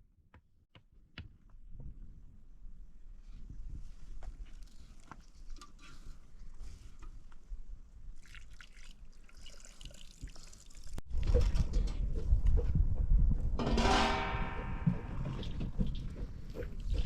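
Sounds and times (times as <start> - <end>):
water dripping and trickling: 8.2 - 11.4.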